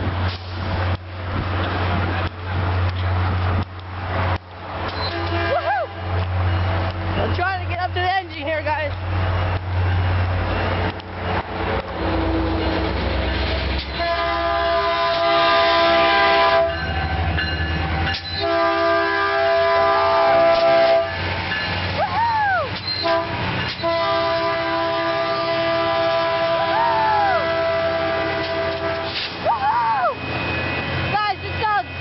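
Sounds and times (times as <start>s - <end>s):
passing train rumble: 0.0s - 32.0s
locomotive air horn blasts: 5.0s - 5.7s, 13.9s - 16.8s, 18.3s - 21.2s, 22.9s - 29.4s.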